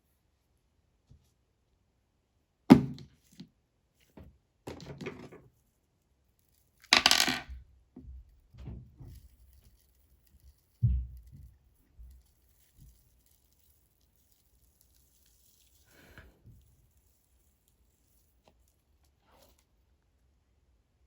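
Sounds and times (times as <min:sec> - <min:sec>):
dull thump: 0:02.7 - 0:03.0.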